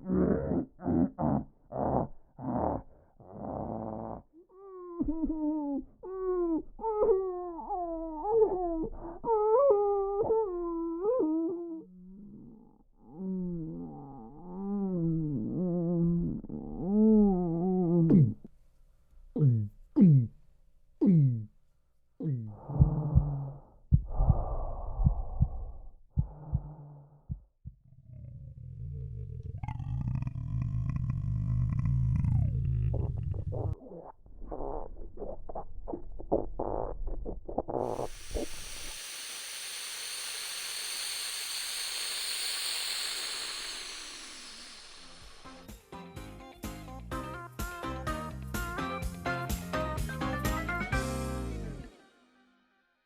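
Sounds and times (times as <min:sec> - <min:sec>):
gulps dropping in pitch: 0:22.2 - 0:26.9, 0:29.5 - 0:45.7
short low pulses: 0:22.2 - 0:27.8, 0:37.8 - 0:45.7
air hiss inflating: 0:37.8 - 0:45.7
low hum: 0:37.8 - 0:45.7.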